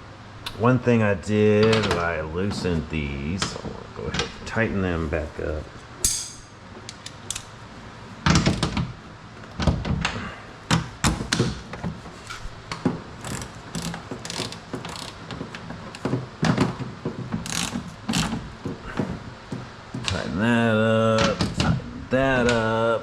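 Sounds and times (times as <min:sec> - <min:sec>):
hand ratchet clicking: 0:13.2 - 0:15.4, 0:17.4 - 0:18.4.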